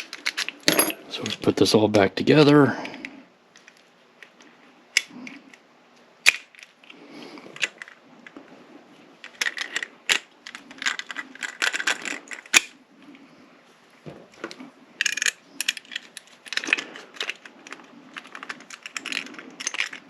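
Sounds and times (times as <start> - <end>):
metal lock parts clicking: 0.3 - 1.0.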